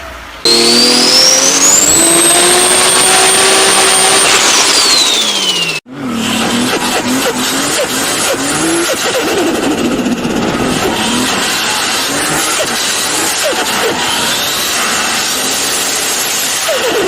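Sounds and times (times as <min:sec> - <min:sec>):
turbo whine: 0:00.4 - 0:05.8
car engine revving: 0:00.4 - 0:17.0.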